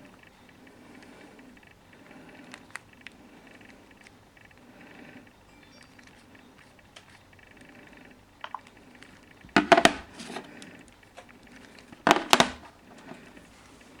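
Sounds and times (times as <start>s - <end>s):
smartphones knocking and clattering: 8.4s - 13.5s.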